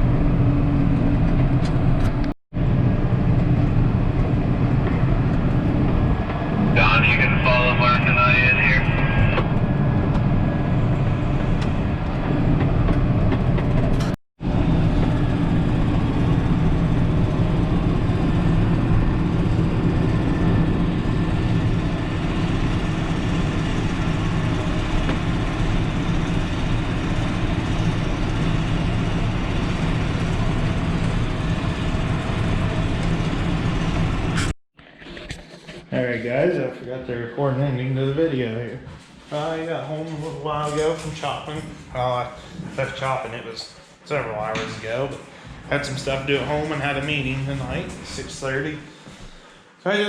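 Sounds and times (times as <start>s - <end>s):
diesel machinery running under load: 0.0s - 34.5s.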